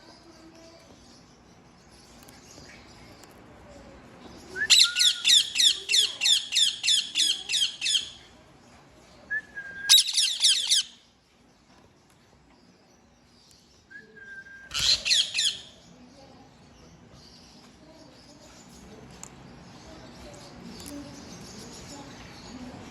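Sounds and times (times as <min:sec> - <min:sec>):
parakeet screeching: 0:09.9 - 0:11.0, 0:14.7 - 0:15.7.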